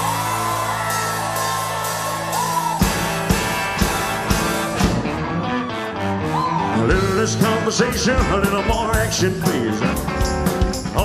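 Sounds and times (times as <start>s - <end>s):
live rock band playing: 0.0s - 11.0s
drum strikes: 2.0s - 5.2s.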